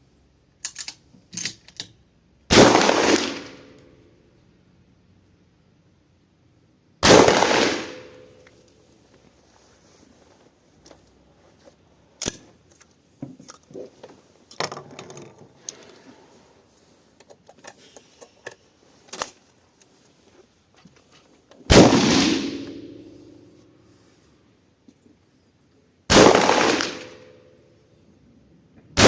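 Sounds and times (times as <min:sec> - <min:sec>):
shotgun shot with ringing tail: 0:21.7 - 0:23.4.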